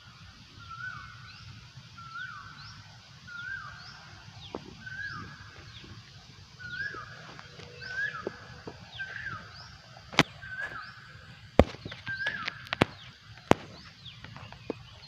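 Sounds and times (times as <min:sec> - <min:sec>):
faint high bird calls: 0:00.0 - 0:15.0
koel rising call: 0:03.4 - 0:11.2.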